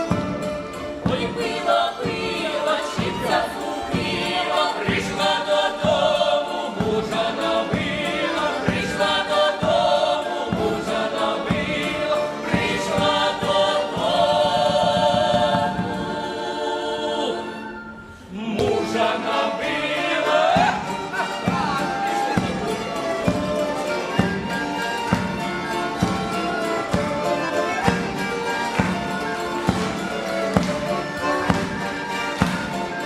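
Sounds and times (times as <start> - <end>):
folk choir singing: 0.0 - 33.0.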